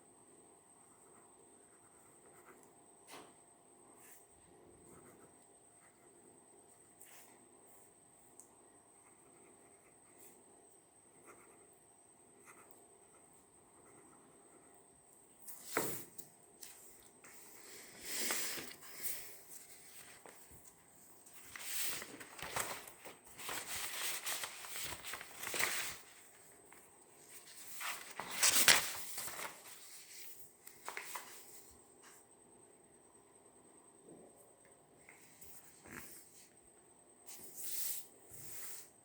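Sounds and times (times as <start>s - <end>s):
paper rustling and crinkling: 15.5s - 32.2s.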